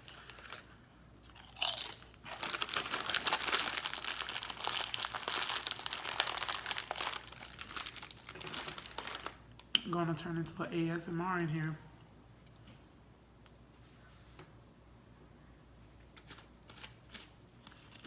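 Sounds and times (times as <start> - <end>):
chips crunching and chewing: 0.0 - 9.4, 16.2 - 18.0
chip bag crinkling: 0.0 - 9.6.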